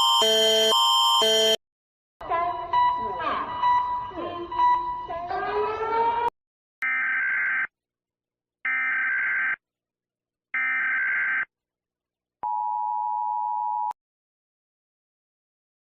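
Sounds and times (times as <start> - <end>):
two-tone attention signal: 0.0 - 1.6.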